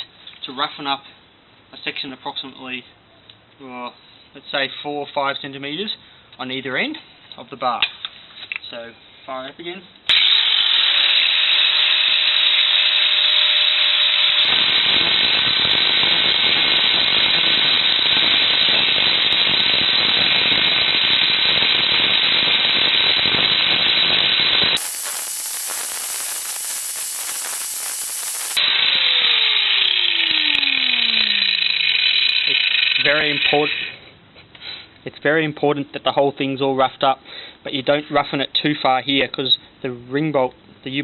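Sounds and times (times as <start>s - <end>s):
angle grinder whining: 24.8s - 28.6s
grinder grinding steel rod: 24.8s - 28.6s.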